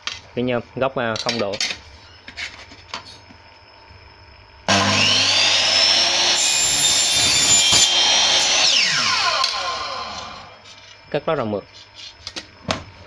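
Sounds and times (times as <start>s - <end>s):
miter saw motor whine: 4.6s - 10.7s
saw cutting through aluminium: 4.7s - 10.6s.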